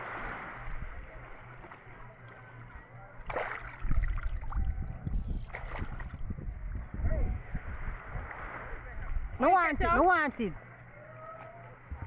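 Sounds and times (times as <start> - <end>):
water splashing: 0.0 - 6.3
water sloshing: 0.0 - 6.4
boat engine hum: 0.0 - 12.0
low rumbling: 0.0 - 12.0.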